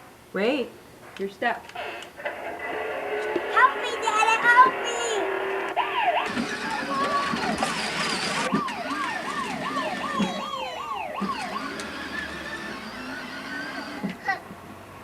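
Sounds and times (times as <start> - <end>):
electronic toy siren wailing: 5.8 - 14.1.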